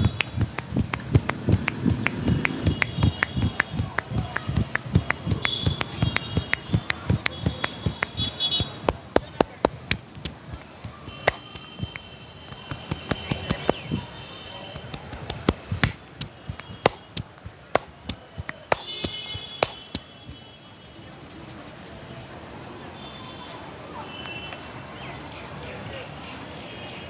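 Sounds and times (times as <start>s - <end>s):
hand slaps on head: 0.0s - 14.0s, 14.8s - 20.4s.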